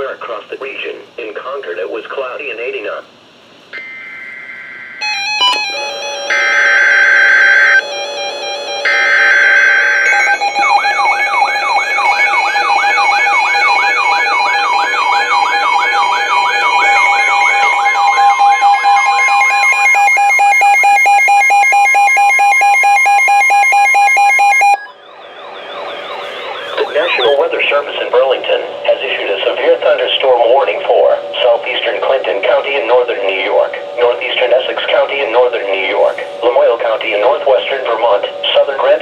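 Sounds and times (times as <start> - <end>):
warbling siren-like alert tone: 3.8 - 32.6.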